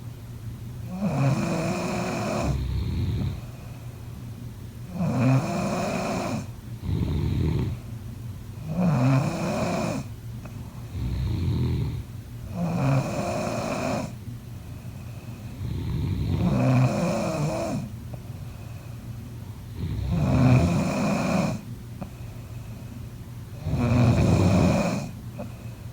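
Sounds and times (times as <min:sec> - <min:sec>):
person snoring: 0:00.9 - 0:03.4, 0:15.6 - 0:17.9, 0:19.7 - 0:21.6, 0:23.6 - 0:25.2.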